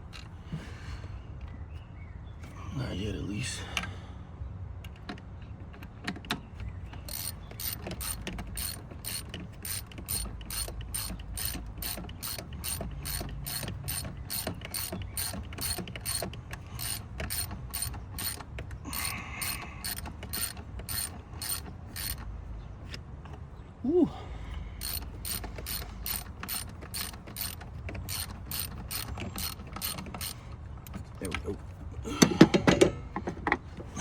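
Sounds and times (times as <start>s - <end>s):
ratchet wrench clicking: 7.0s - 22.3s, 24.8s - 31.0s.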